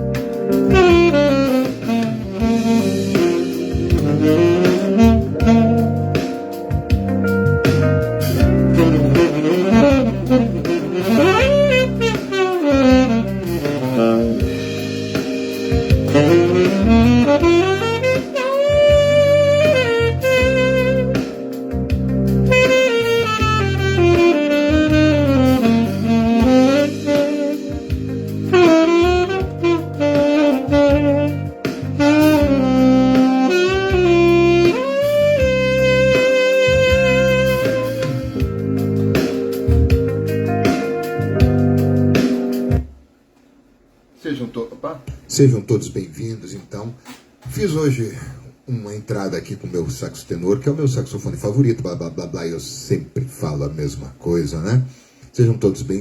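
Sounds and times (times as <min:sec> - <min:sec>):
tenor saxophone melody: 0:00.0 - 0:42.9
jazz accompaniment: 0:00.0 - 0:44.2.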